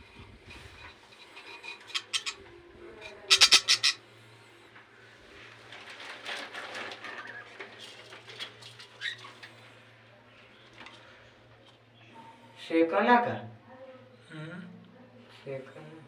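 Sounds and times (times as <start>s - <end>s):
budgerigars chattering: 2.0s - 2.4s, 3.3s - 4.0s.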